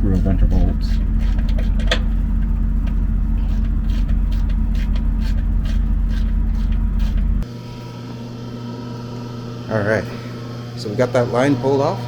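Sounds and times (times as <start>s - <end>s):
engine humming: 0.0s - 7.4s.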